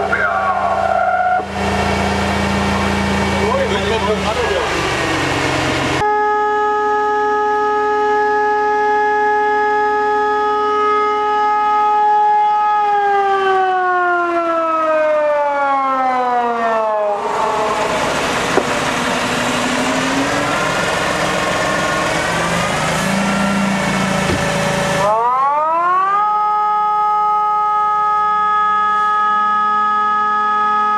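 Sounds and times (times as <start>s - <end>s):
electronic siren wail: 0.0s - 3.9s, 5.0s - 30.9s.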